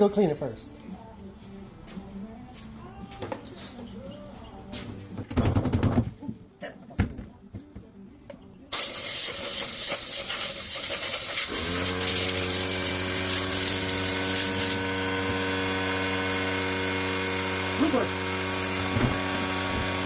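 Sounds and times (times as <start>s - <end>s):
loud hiss of spraying air or water: 8.7s - 14.8s
electric motor humming: 11.3s - 20.0s.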